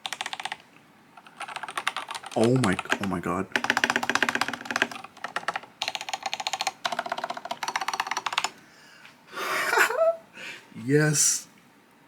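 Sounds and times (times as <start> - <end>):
mechanical keyboard typing: 0.0 - 0.6, 1.2 - 8.5.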